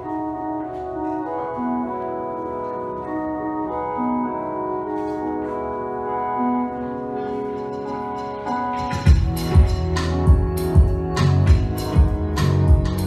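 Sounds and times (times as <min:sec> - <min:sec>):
organ-like keyboard tones: 0:00.0 - 0:13.0.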